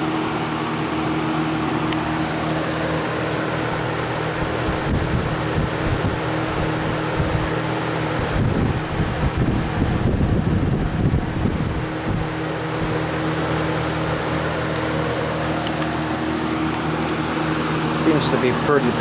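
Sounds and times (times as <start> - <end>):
box fan running: 0.0 - 19.0
wind buffeting microphone: 3.7 - 13.2.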